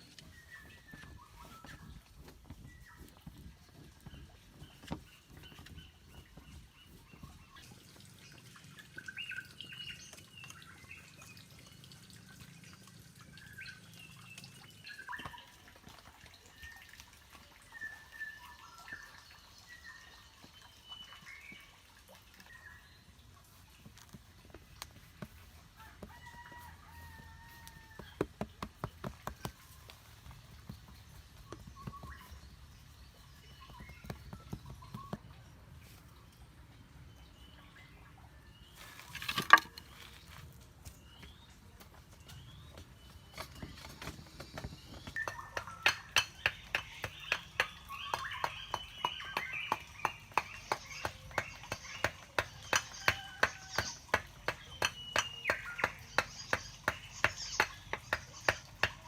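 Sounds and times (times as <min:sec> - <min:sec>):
long rooster-like crow: 0:25.8 - 0:28.1
birds calling: 0:42.3 - 0:59.0.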